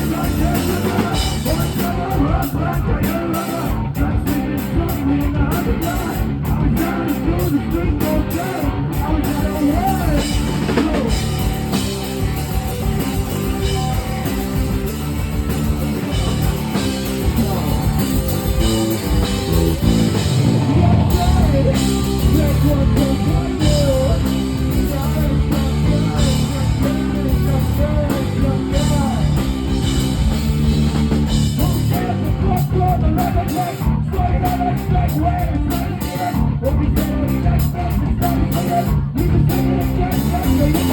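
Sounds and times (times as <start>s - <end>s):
rock music with singing: 0.0s - 40.9s.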